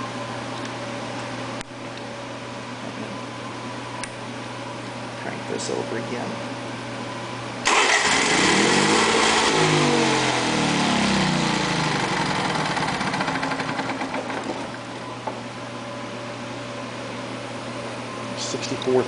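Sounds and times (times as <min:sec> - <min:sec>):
generator engine cranking: 0:07.6 - 0:14.8.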